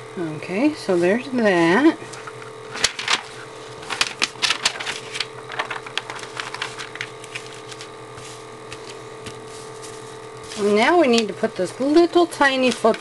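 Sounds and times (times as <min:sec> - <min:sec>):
faint steady hum: 0:00.0 - 0:13.0
vinyl decal clicks and crackles: 0:02.8 - 0:08.0.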